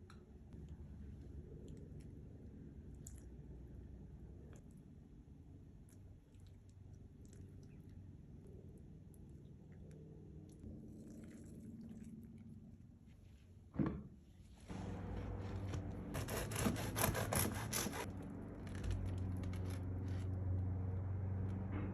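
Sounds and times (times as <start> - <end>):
knife sawing through crusty bread: 16.1 - 18.1.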